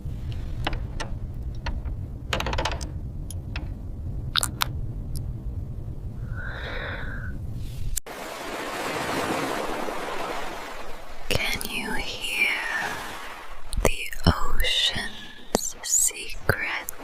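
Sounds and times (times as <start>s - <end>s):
low hum: 0.0s - 17.0s
even hiss: 6.2s - 8.0s.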